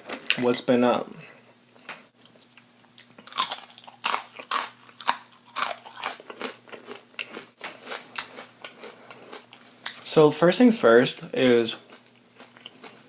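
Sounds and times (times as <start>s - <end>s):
crunching crispy fried food: 2.2s - 10.2s, 11.3s - 13.0s.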